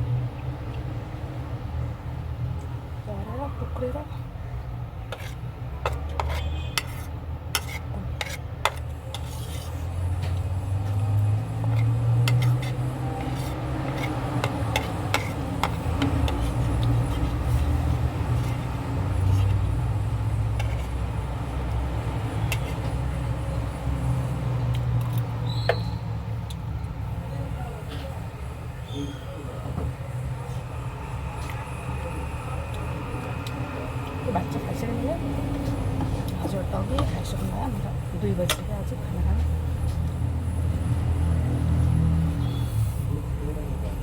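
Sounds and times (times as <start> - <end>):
metal spoon scraping a plate: 5.1 - 21.2, 22.3 - 23.2.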